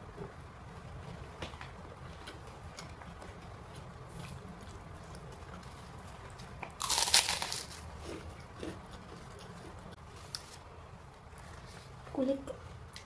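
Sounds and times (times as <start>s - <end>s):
crunch of biting fried food: 6.8s - 8.8s.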